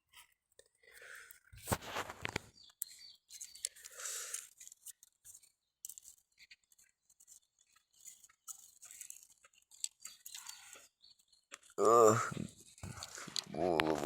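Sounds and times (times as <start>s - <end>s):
soft rustles: 1.5s - 2.5s.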